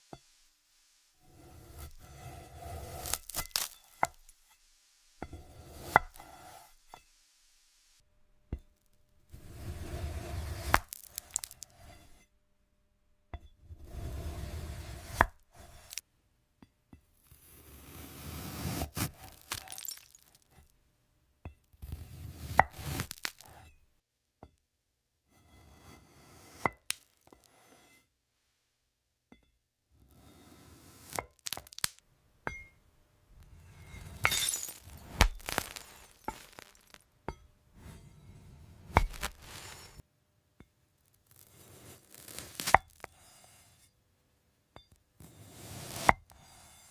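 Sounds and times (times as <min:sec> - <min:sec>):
candied strawberries crunching: 0:02.9 - 0:04.4, 0:10.8 - 0:11.7, 0:18.9 - 0:20.4, 0:22.8 - 0:23.6, 0:31.3 - 0:32.0, 0:34.4 - 0:37.0, 0:39.0 - 0:40.0.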